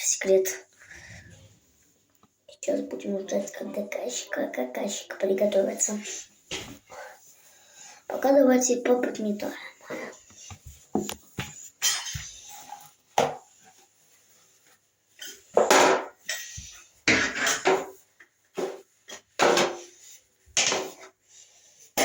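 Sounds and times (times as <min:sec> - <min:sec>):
broom sweeping a floor: 0:05.5 - 0:22.0.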